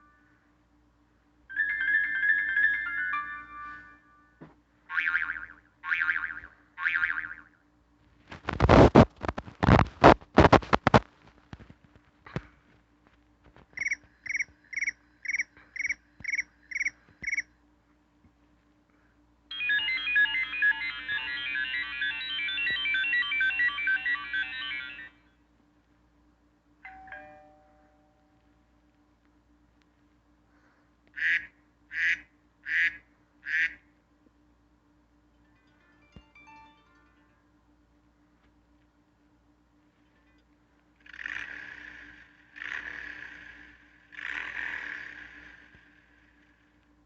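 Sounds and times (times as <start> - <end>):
cricket-like ringtone trills: 1.5 - 4.4, 13.8 - 17.5, 19.5 - 25.4, 35.4 - 37.6
ringing chime: 1.5 - 4.4, 19.5 - 25.3, 26.8 - 28.4, 35.4 - 37.6
electronic beeps: 13.8 - 17.4, 19.5 - 25.2.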